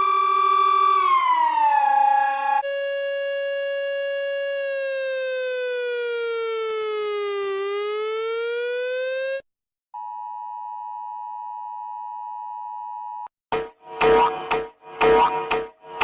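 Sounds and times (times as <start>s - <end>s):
electronic siren wail: 0.0s - 9.4s, 13.9s - 16.0s.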